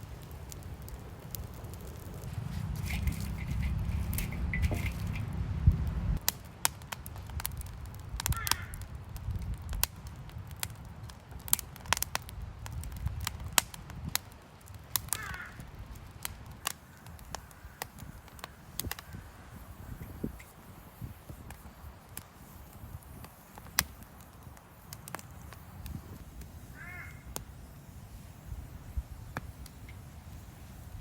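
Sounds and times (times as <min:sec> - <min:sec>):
campfire crackling and popping: 0:00.0 - 0:31.0
low rumble: 0:02.2 - 0:06.2.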